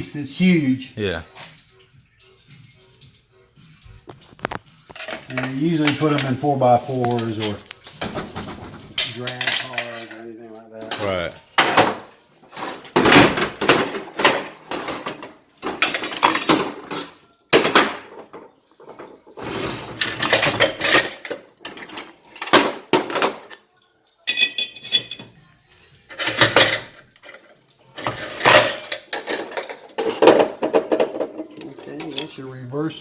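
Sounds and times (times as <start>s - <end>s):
steel parts clinking and clattering: 4.8s - 10.2s, 10.8s - 18.3s, 19.8s - 23.6s, 24.3s - 25.4s, 26.1s - 32.6s.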